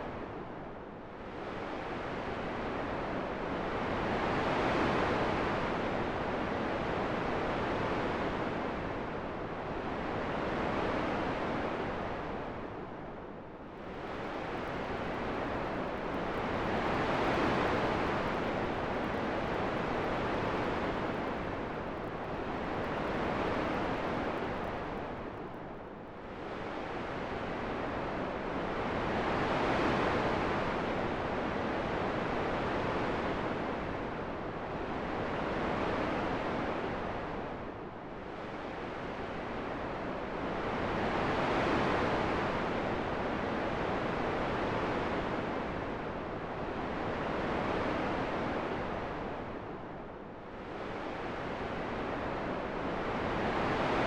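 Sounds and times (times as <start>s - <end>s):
wind blowing in gusts: 13.7s - 25.5s.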